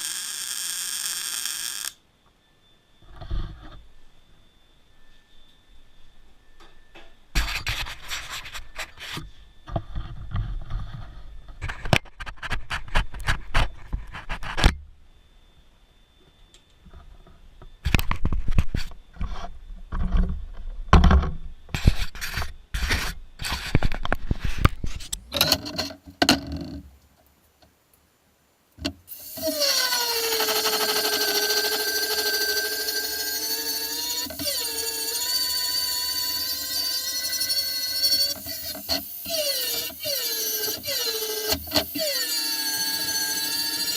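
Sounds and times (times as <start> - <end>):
power tool motor whine: 0.0 - 2.0, 29.1 - 43.9.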